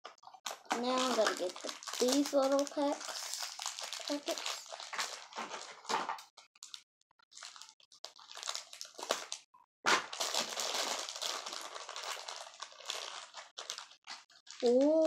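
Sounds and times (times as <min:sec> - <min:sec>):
plastic packets crinkling: 0:00.2 - 0:15.0.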